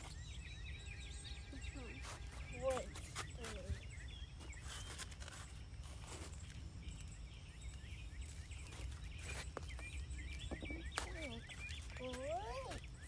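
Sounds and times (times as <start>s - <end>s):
faint bird chirps: 0.0s - 13.0s
soft rustles: 2.0s - 7.2s, 8.2s - 13.0s.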